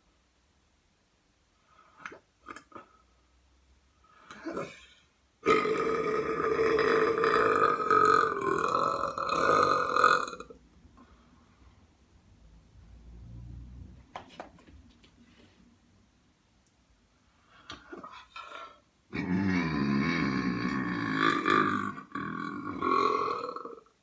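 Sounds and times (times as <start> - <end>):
long loud burp: 5.4 - 10.6, 18.0 - 24.0.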